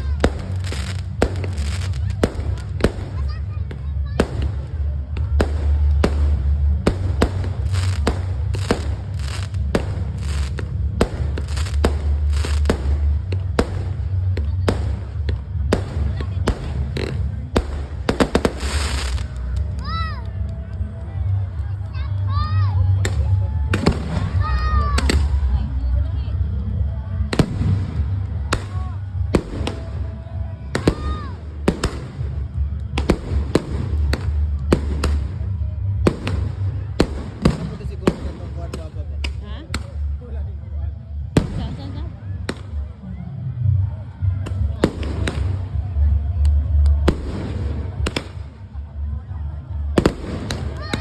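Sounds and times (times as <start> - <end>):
fireworks bangs: 0.0 - 19.8
fireworks crackling: 0.0 - 20.3, 27.2 - 40.2, 41.2 - 42.9, 44.4 - 49.0, 49.8 - 51.0
constant low rumble: 0.0 - 51.0.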